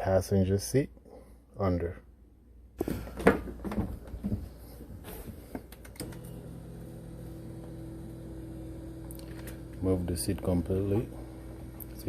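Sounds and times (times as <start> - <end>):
power seat motor humming: 5.8 - 12.0.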